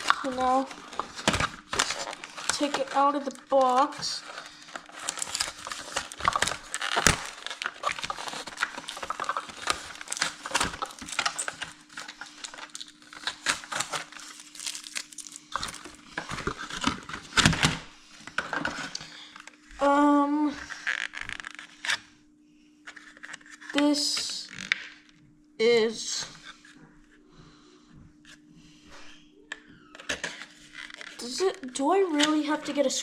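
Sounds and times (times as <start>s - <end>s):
packaging crinkling and tearing: 0.0s - 19.1s, 20.6s - 22.1s, 22.8s - 25.1s, 30.0s - 32.9s
faint steady hum: 0.0s - 33.0s.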